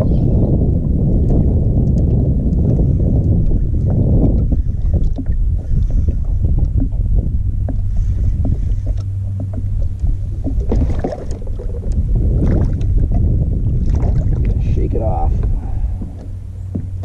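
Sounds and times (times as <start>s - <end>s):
low hum: 0.0s - 17.0s
low rumble of water and wind: 0.0s - 17.0s
water splashing: 3.8s - 17.0s
light clicks and knocks: 15.4s - 17.0s.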